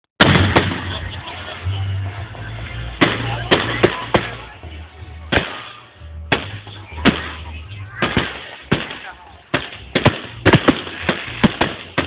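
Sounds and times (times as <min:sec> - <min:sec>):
firework bangs: 0:00.2 - 0:01.5, 0:02.8 - 0:04.6, 0:05.3 - 0:12.0
outdoor noise: 0:00.2 - 0:12.0.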